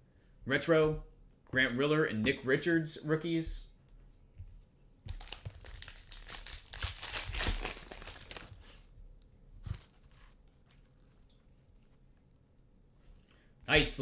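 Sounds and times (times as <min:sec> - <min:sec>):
foil wrapper tearing and crinkling: 0:05.2 - 0:08.8.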